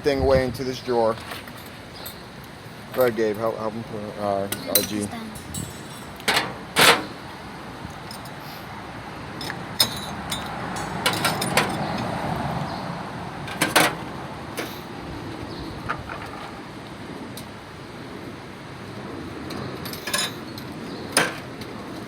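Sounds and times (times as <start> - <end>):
metal parts clinking: 4.5 - 7.1, 9.4 - 11.9, 19.8 - 21.4.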